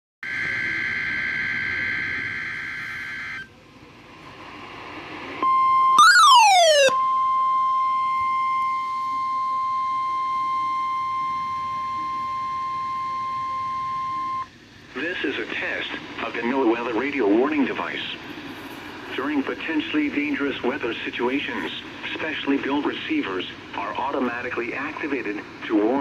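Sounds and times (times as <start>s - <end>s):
falling tone sweep: 6.0s - 7.0s
steady alert tone: 6.0s - 7.0s.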